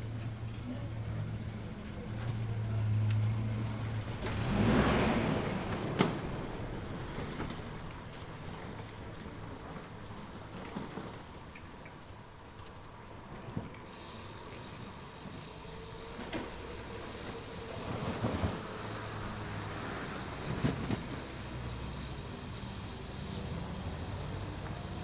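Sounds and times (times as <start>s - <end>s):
car passing by: 2.5s - 11.2s, 15.4s - 25.0s.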